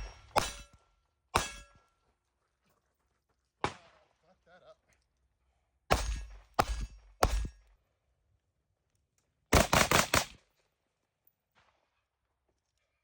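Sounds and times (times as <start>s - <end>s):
gunshots: 0.0s - 0.7s, 5.9s - 7.5s, 9.5s - 10.4s.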